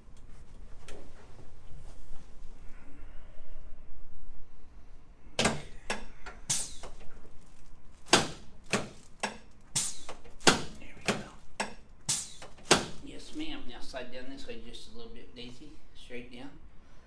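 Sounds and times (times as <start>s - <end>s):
sharp knocks: 8.1s - 13.0s.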